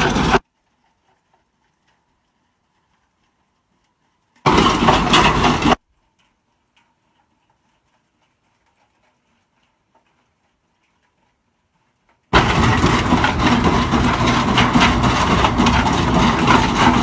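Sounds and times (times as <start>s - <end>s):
farm machinery noise: 0.0s - 0.4s, 4.4s - 5.8s, 12.3s - 17.0s.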